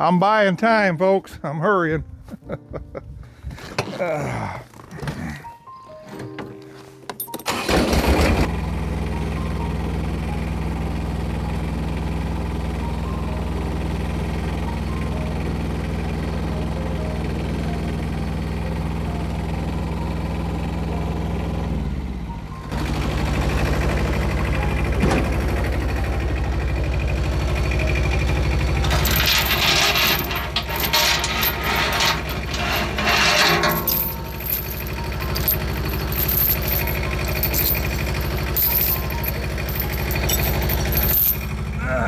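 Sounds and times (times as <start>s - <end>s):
engine running: 7.1s - 42.0s
metallic chain jingling and clanking: 28.8s - 41.5s.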